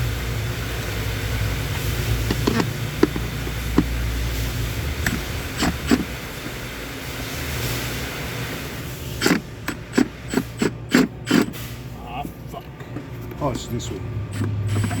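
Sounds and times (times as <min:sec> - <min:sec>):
metallic clicks of hand tools: 0:09.2 - 0:11.6.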